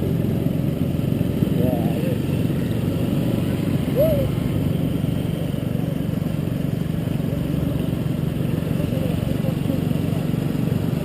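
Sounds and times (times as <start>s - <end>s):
moving vehicle rumble: 0.0s - 11.0s
short call rising and falling: 3.9s - 4.4s.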